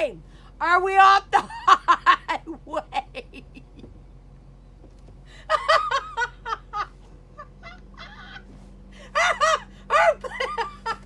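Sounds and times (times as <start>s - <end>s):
woman laughing hard: 5.5s - 11.0s.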